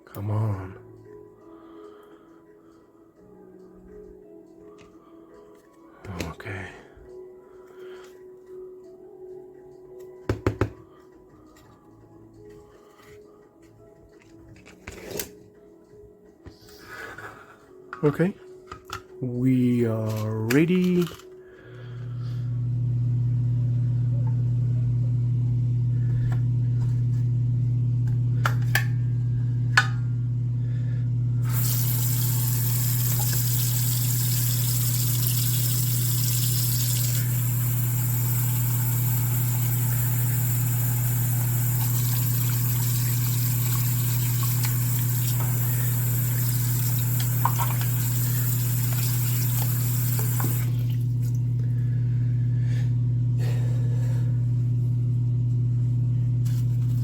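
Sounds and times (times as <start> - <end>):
cleaning machine buzzing hum: 21.7 - 57.0.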